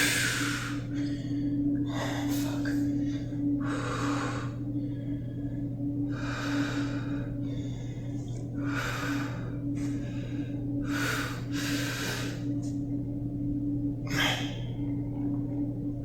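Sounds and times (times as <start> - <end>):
heavy breathing: 0.0 - 5.5, 6.1 - 12.5
steady low hum: 0.0 - 16.0.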